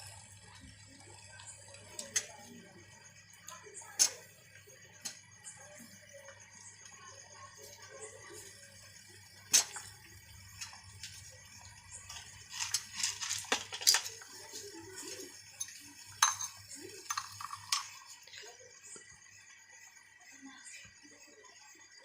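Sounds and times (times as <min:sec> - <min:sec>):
kitchen utensils clinking: 0:12.0 - 0:18.3.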